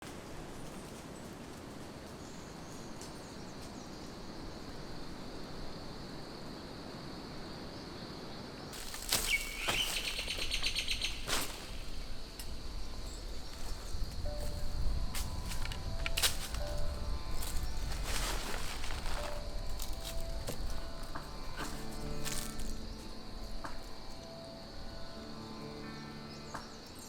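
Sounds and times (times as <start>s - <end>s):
wind blowing through forest: 0.0s - 27.0s
bird calling: 8.8s - 12.0s.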